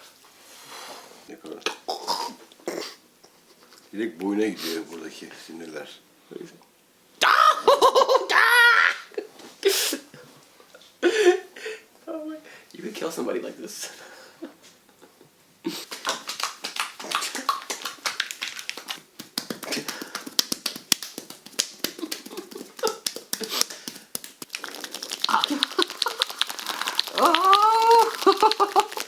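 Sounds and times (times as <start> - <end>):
hands tapping and rubbing head: 15.7 - 29.0
person moaning: 26.9 - 29.0.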